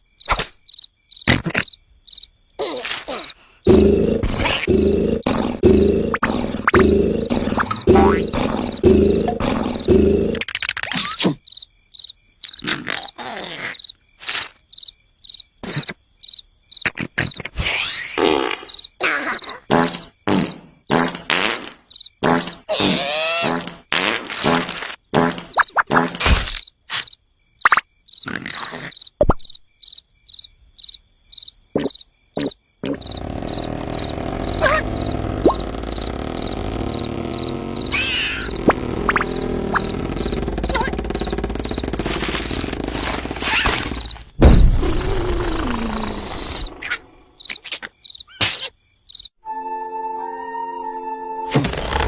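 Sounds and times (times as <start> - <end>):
cricket chirping: 0.0 - 49.4
loud rasping noises: 3.7 - 10.5, 32.8 - 46.9
rapid clicking dropping in pitch: 3.7 - 11.0, 32.9 - 44.2
short noisy bursts: 33.0 - 44.2.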